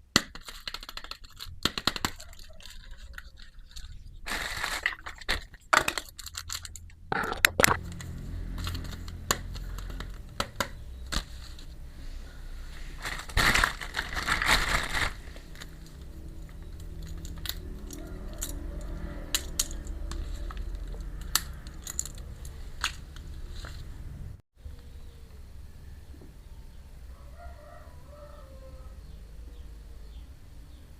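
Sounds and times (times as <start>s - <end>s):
plastic toy pieces clicking: 0.2s - 4.8s, 5.4s - 10.8s, 16.6s - 23.0s
rustling: 0.4s - 24.2s.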